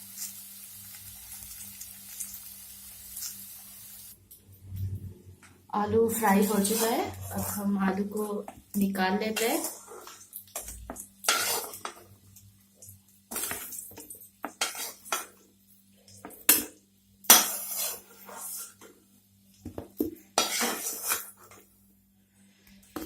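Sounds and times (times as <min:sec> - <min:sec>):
metal spoon scraping a pan: 0:06.1 - 0:08.3, 0:09.2 - 0:12.1, 0:13.3 - 0:15.4, 0:16.2 - 0:19.0, 0:20.3 - 0:21.7.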